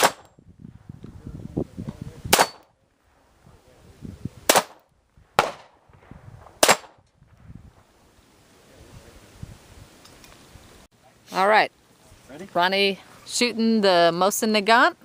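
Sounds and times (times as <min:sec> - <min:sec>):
sharp gunshots: 0:00.0 - 0:00.4, 0:02.3 - 0:02.7, 0:04.4 - 0:07.0.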